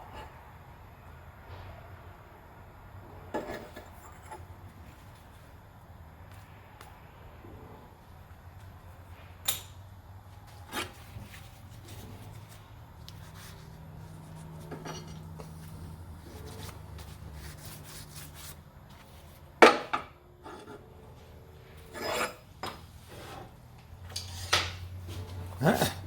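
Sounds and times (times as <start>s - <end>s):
low steady hum: 0.0s - 26.0s
tools knocking and clinking: 9.4s - 9.8s.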